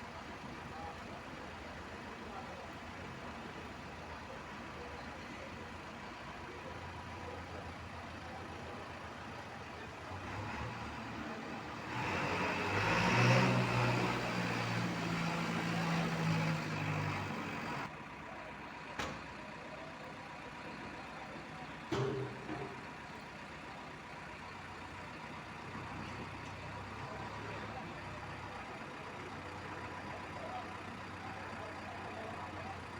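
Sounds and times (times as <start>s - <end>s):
diesel machinery engine revving: 9.7s - 17.9s.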